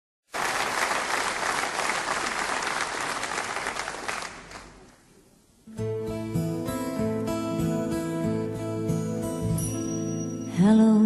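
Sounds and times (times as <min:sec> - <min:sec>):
audience applauding: 0:00.3 - 0:05.0
acoustic guitar playing: 0:05.6 - 0:11.0.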